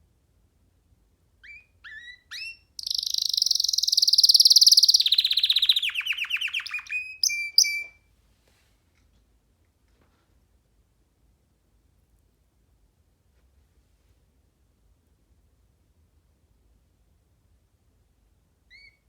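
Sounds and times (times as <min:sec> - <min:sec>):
canary singing trills: 0:01.4 - 0:08.0, 0:18.7 - 0:19.0.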